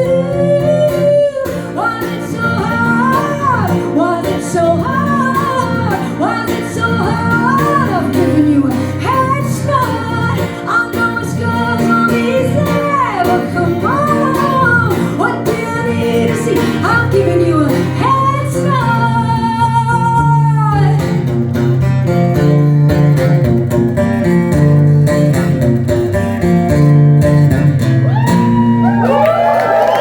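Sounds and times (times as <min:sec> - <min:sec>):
woman singing: 0:00.0 - 0:21.4
rock band playing: 0:20.8 - 0:30.0
audience whooping and cheering: 0:28.0 - 0:30.0.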